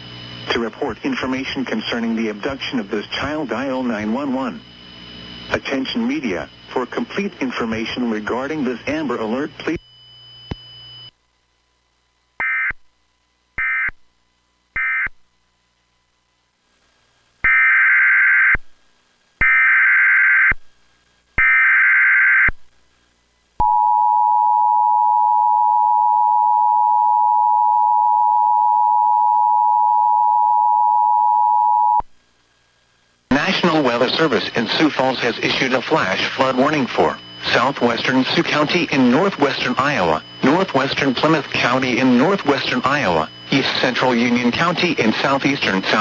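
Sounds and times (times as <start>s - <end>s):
shrill data bursts: 33.3s - 46.0s.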